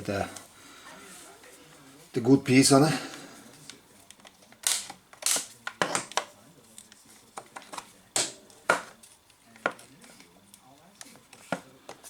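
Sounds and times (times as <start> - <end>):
wire cutters snipping wire: 4.6 - 6.2.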